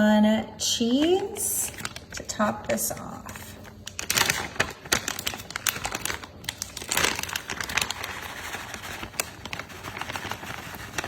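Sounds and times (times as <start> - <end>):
grated cheese shaken from package: 4.0 - 11.0.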